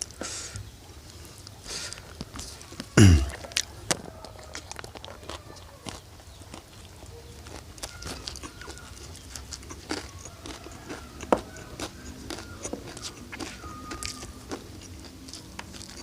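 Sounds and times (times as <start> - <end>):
chewing: 1.1 - 16.0
mouth clicks: 2.8 - 3.7.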